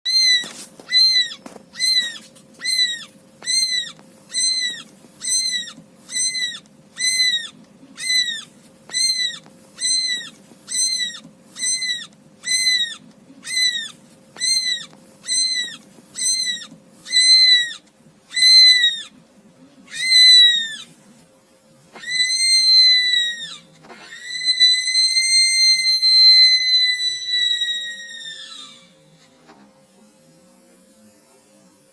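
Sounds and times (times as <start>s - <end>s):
high piercing call: 0.1s - 19.1s.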